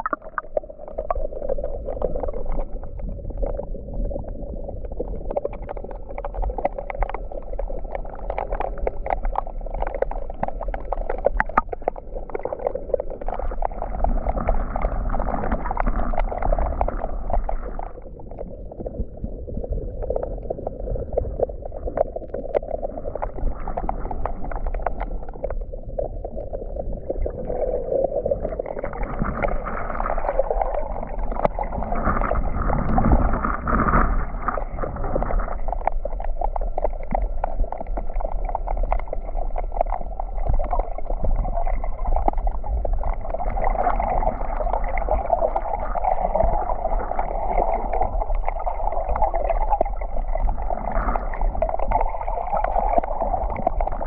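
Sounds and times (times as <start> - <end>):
wind rumbling on microphone: 28.2 - 35.9.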